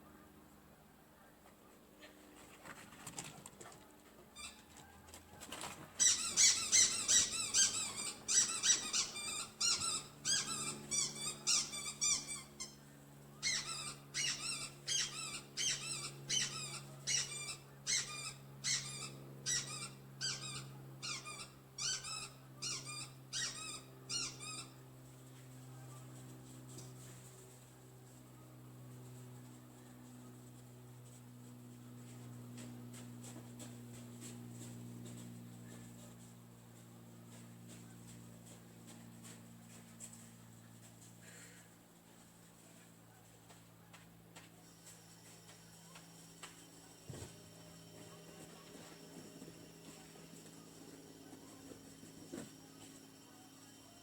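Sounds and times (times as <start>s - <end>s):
puppy yelping and whining: 6.0s - 12.8s, 13.4s - 24.7s.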